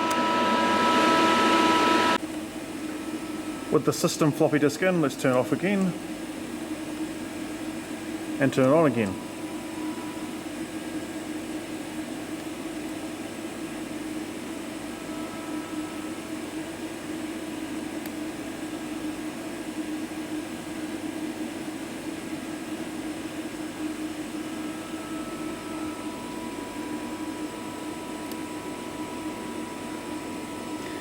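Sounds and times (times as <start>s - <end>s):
milling machine hum and fan: 0.0s - 31.0s
faint high tones: 24.4s - 31.0s.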